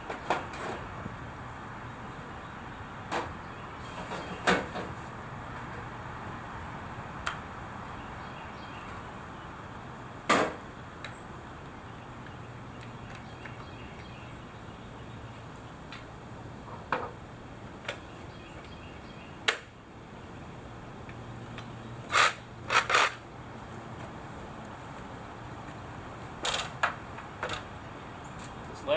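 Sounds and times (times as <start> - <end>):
knocks of tools and wood: 4.0 - 5.0, 10.3 - 10.6, 16.7 - 17.2.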